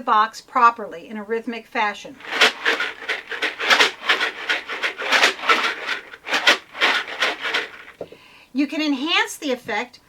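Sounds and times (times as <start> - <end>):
beans rattling in a shaken box: 2.2 - 8.2.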